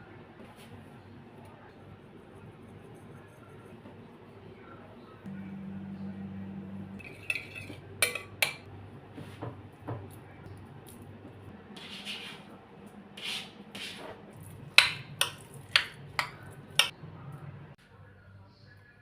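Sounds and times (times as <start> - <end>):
dishes and cutlery clinking: 7.0 - 8.7, 14.8 - 16.9.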